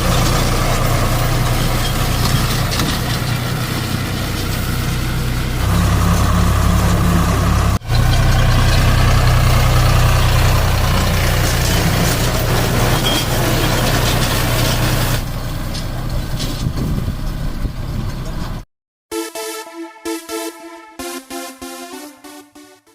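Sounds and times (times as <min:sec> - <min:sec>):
tractor diesel engine running: 0:00.0 - 0:18.6.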